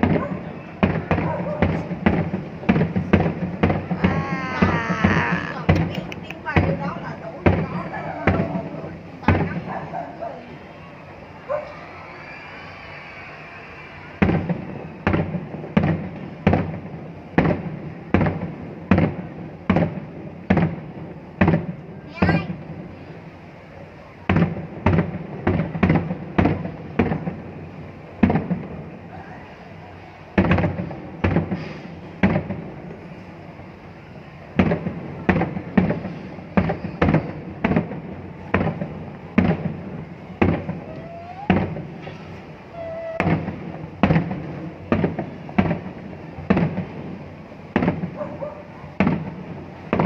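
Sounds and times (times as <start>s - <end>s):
fireworks shell bursts: 31.4s - 32.1s.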